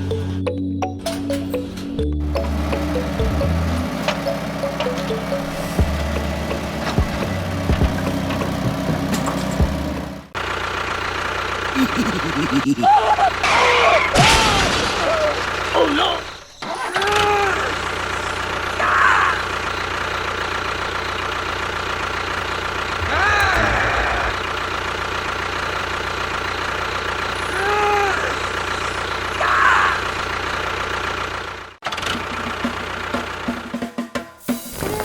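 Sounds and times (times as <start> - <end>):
short rising and falling tones: 1.3 - 7.6
engine idling: 1.3 - 33.8.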